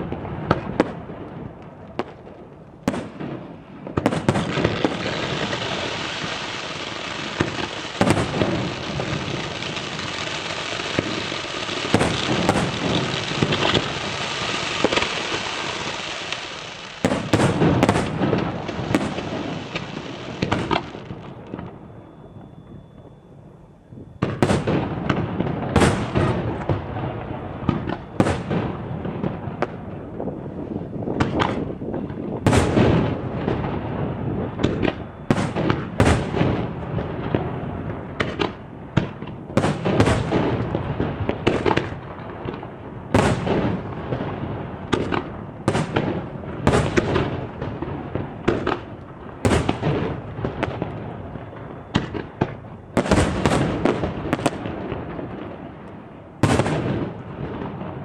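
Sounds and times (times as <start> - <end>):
fireworks crackling: 0.0 - 22.6, 24.2 - 58.0
firework shells booming: 0.0 - 23.1, 24.2 - 55.8, 56.4 - 58.0.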